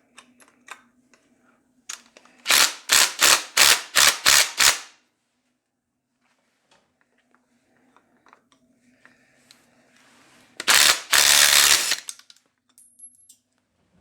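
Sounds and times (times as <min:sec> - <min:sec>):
power tool bursts: 0:02.5 - 0:04.9, 0:10.6 - 0:12.1.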